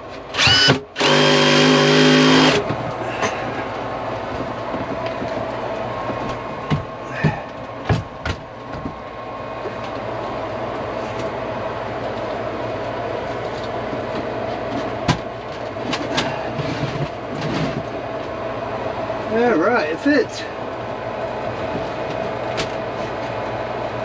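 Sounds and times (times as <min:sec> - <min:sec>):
mechanical hum: 0:00.0 - 0:24.0.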